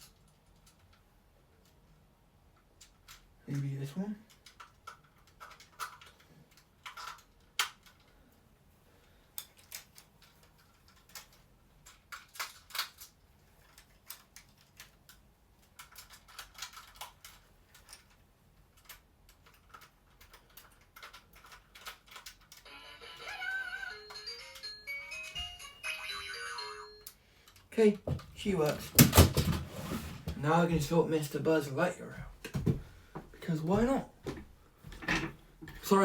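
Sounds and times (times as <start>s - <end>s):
plastic toy clicks and scrapes: 4.3s - 8.1s, 9.4s - 18.2s
electronic toy tune: 22.6s - 27.1s.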